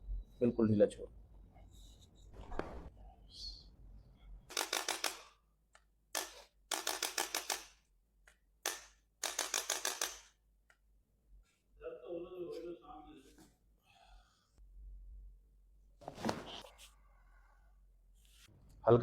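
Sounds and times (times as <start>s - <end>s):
bursts of rapid clicking: 6.2s - 7.8s.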